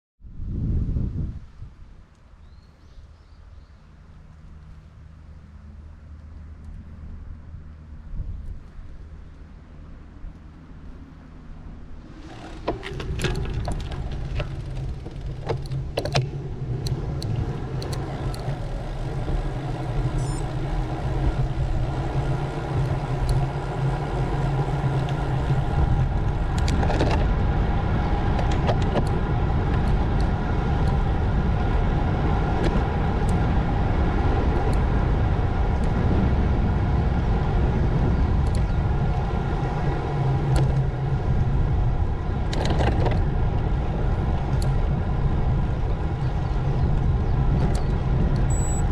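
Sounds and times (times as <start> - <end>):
road tyre and wind rumble: 0.2 - 48.9
sharp bike clicks: 12.1 - 27.3, 32.5 - 33.5, 34.5 - 34.9.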